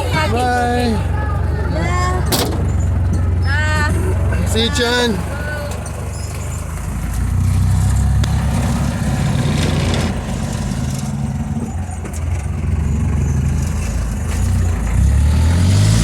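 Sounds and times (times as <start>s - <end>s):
vehicle engine driving along: 0.0s - 16.0s.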